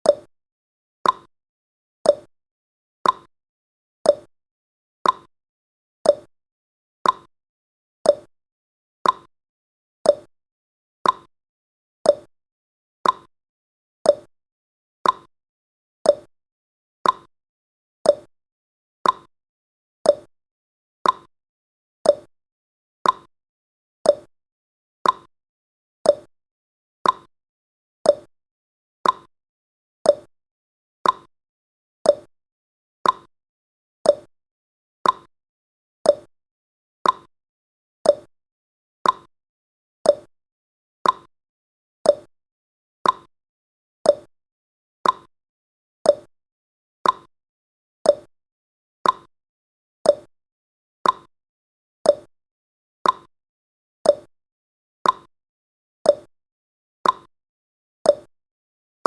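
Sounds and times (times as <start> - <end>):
timer ticking tick-tock: 0.0 - 0.3, 1.0 - 1.3, 2.0 - 2.3, 3.0 - 3.3, 4.0 - 4.3, 5.0 - 5.3, 6.0 - 6.3, 7.0 - 7.3, 8.0 - 8.3, 9.0 - 9.3, 10.0 - 10.3, 11.0 - 11.3, 12.0 - 12.3, 13.0 - 13.3, 14.0 - 14.3, 15.0 - 15.3, 16.0 - 16.3, 17.0 - 17.3, 18.0 - 18.3, 19.0 - 19.3, 20.0 - 20.3, 21.0 - 21.3, 22.0 - 22.3, 23.0 - 23.3, 24.0 - 24.3, 25.0 - 25.3, 26.0 - 26.3, 27.0 - 27.3, 28.0 - 28.3, 29.0 - 29.3, 30.0 - 30.3, 31.0 - 31.3, 32.0 - 32.3, 33.0 - 33.3, 34.0 - 34.3, 35.0 - 35.3, 36.0 - 36.3, 37.0 - 37.3, 38.0 - 38.3, 39.0 - 39.3, 40.0 - 40.3, 41.0 - 41.3, 42.0 - 42.3, 43.0 - 43.3, 44.0 - 44.3, 45.0 - 45.3, 46.0 - 46.3, 47.0 - 47.3, 48.0 - 48.3, 49.0 - 49.3, 50.0 - 50.3, 51.0 - 51.3, 52.0 - 52.3, 53.0 - 53.3, 54.0 - 54.3, 55.0 - 55.3, 56.1 - 56.3, 57.0 - 57.3, 58.1 - 58.3.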